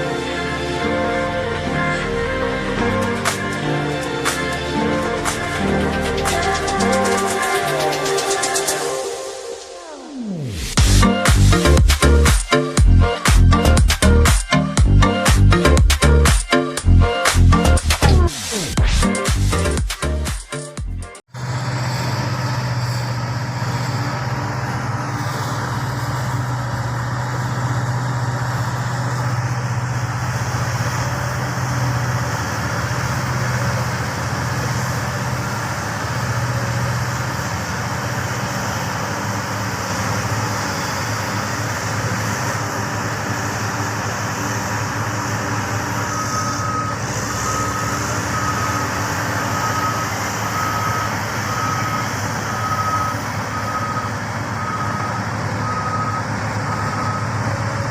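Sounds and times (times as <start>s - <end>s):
heavy machinery engine hum: 0.0s - 9.6s, 21.2s - 57.9s
reversing alarm beeping: 39.6s - 57.9s.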